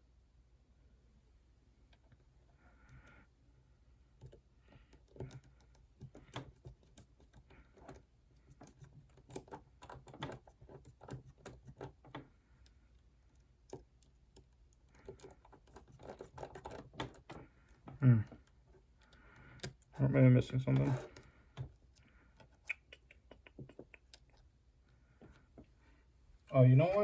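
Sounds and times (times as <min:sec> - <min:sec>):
small tools clicking and tapping: 0:04.2 - 0:17.4.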